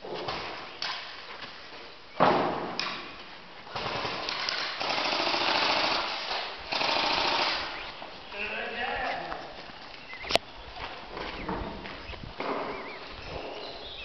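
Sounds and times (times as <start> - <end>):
airsoft gun crack: 3.7 - 7.8
airsoft gun full-auto rattle: 3.8 - 7.8.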